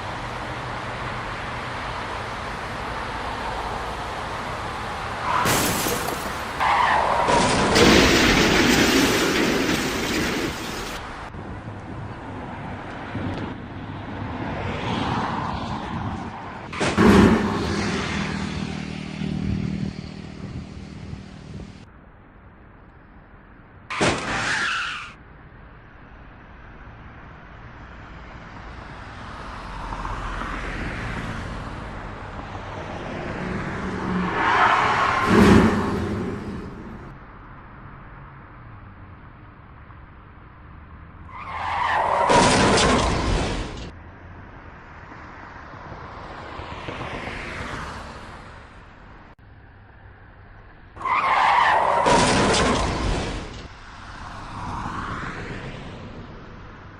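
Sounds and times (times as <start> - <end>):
road traffic noise: 0.0 - 56.9
car crash tyre screech and impact: 5.2 - 11.0, 16.6 - 18.6, 23.9 - 25.2, 33.9 - 37.2, 41.3 - 43.9, 51.0 - 53.8.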